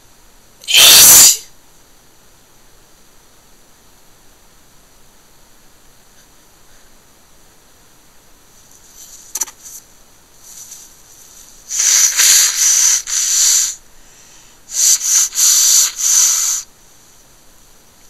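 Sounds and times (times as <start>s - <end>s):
person blowing nose: 0.6s - 1.4s, 11.7s - 13.8s, 14.7s - 16.7s.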